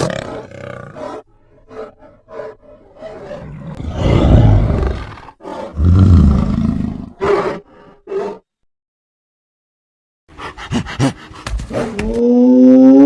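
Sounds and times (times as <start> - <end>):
deep monster roars: 3.1 - 7.2.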